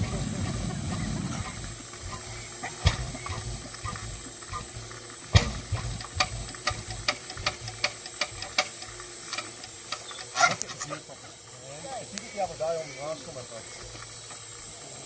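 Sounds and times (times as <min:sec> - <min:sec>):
stationary engine knocking: 0:00.0 - 0:10.6
low hum: 0:00.0 - 0:11.6.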